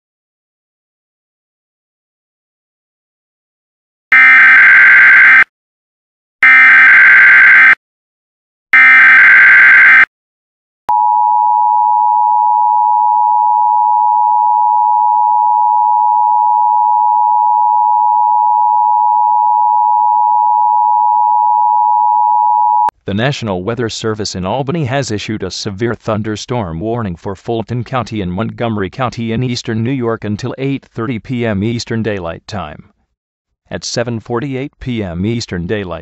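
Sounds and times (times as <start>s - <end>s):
emergency alert attention tone: 4.1s - 5.5s, 6.4s - 7.8s, 8.8s - 10.1s.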